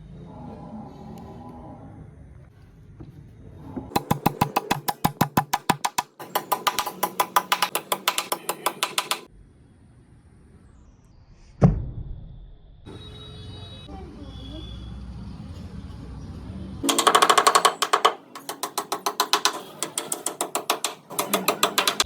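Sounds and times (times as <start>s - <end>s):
fast sharp knocks: 3.9s - 9.3s, 16.8s - 22.0s.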